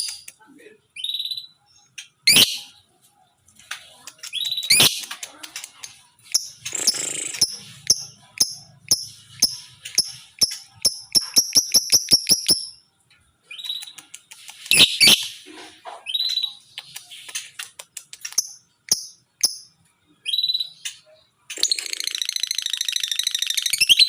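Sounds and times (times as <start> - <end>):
lovebird chirping and squawking: 1.0 - 2.8, 4.1 - 12.8, 13.5 - 24.0.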